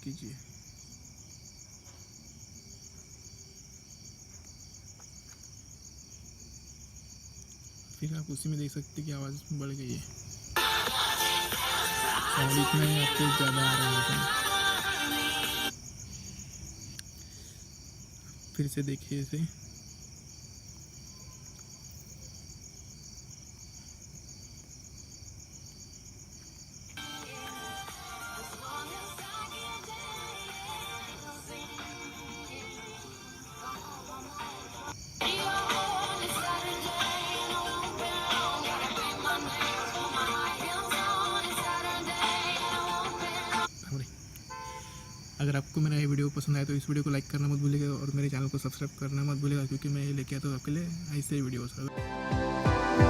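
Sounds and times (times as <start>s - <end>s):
crickets trilling: 0.0s - 51.9s
slower cricket chirp: 0.0s - 51.9s
music: 10.6s - 15.7s, 27.0s - 43.7s, 51.9s - 53.0s.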